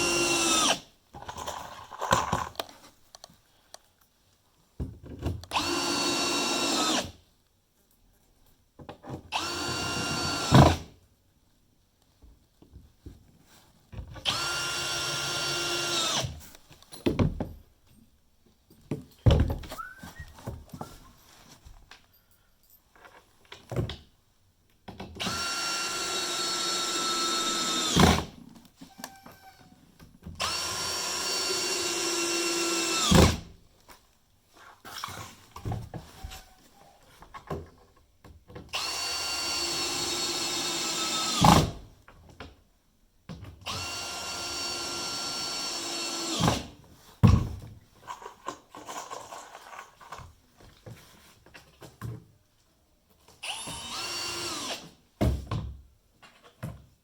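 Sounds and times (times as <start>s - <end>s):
power drill driving screws: 0.0s - 0.9s, 5.5s - 7.2s, 9.3s - 10.9s, 14.2s - 16.4s, 25.2s - 28.3s, 30.4s - 33.4s, 38.7s - 41.8s, 43.6s - 46.7s, 53.4s - 54.9s.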